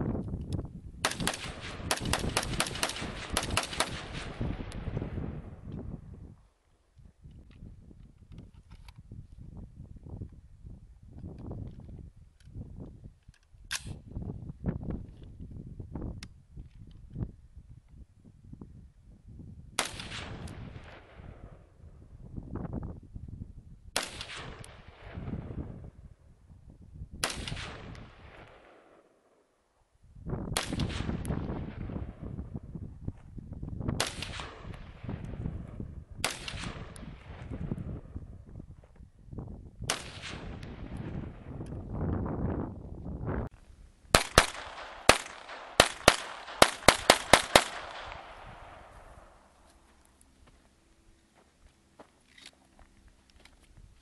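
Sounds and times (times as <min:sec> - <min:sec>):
gunshots with echo: 0:01.0 - 0:04.7, 0:44.2 - 0:49.4
gunshots with rolling echo: 0:01.0 - 0:05.6, 0:19.8 - 0:21.8, 0:24.0 - 0:25.9, 0:27.2 - 0:29.5, 0:30.6 - 0:32.3, 0:34.0 - 0:38.2, 0:39.9 - 0:41.6, 0:44.1 - 0:49.6.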